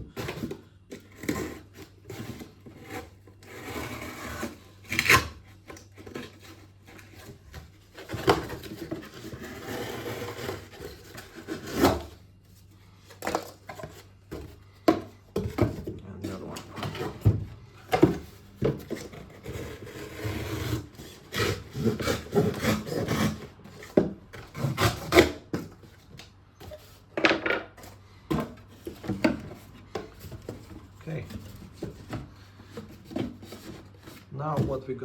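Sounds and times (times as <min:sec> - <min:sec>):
knife cutting cardboard: 0:00.0 - 0:12.2, 0:13.2 - 0:25.9
cardboard rustling: 0:05.6 - 0:27.1, 0:27.8 - 0:35.0.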